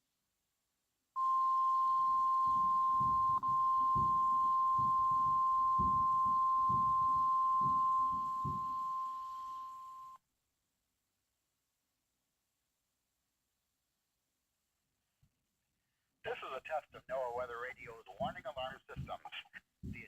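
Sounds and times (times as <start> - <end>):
steady high warning tone: 1.2 - 10.2.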